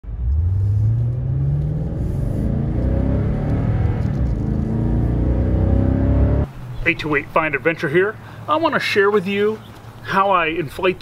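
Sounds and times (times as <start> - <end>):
truck engine accelerating: 0.0 - 6.5.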